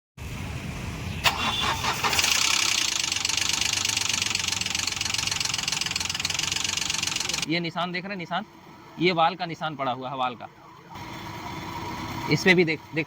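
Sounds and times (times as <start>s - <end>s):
car engine running with metallic clatter: 1.2s - 8.9s.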